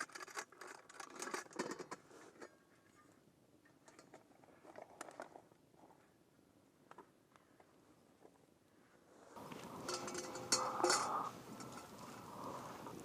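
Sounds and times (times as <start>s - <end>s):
small clicks and crackles: 0.0s - 6.0s, 9.4s - 13.0s.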